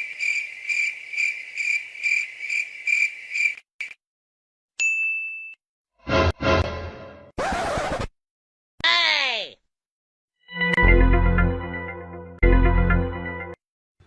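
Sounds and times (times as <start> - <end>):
cricket chirping: 0.0 - 4.0.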